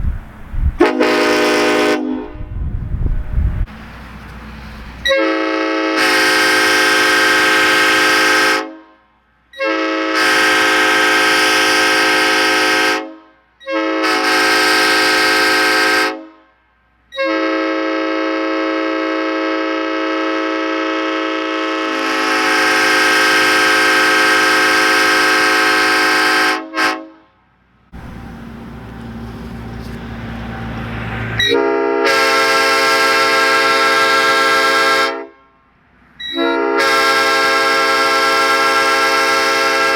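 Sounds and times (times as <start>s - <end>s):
horn chord blasts: 0.8s - 2.6s, 5.1s - 8.8s, 17.3s - 27.3s, 31.3s - 35.4s, 36.4s - 39.9s
low rumble: 2.0s - 5.0s, 27.8s - 31.6s.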